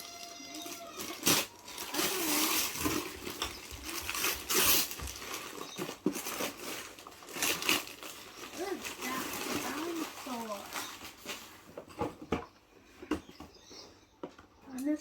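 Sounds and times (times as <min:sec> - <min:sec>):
packaging tearing and crinkling: 0:00.0 - 0:11.5.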